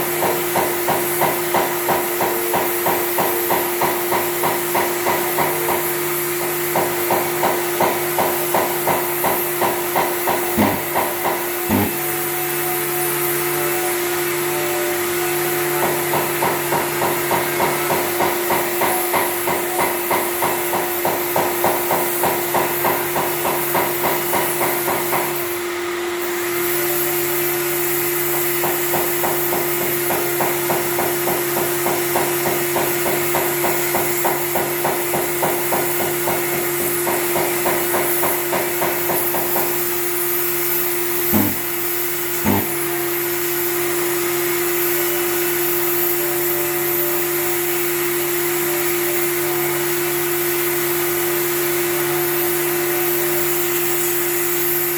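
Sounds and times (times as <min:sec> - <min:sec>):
sharp knocks: 0:06.8 - 0:12.0, 0:41.4 - 0:41.7, 0:42.4 - 0:42.8
power sander running: 0:10.4 - 0:12.7, 0:41.3 - 0:43.1.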